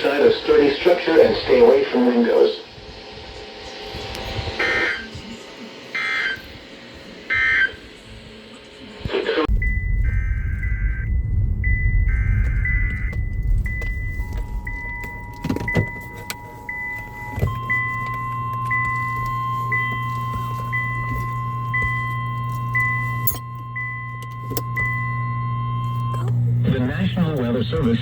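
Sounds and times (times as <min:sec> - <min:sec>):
warbling data burst: 0:00.0 - 0:18.0
low hum: 0:00.0 - 0:28.0
two-tone attention signal: 0:04.6 - 0:05.2, 0:05.9 - 0:06.4, 0:07.3 - 0:07.8, 0:09.5 - 0:26.3
short high beeps: 0:09.5 - 0:26.3.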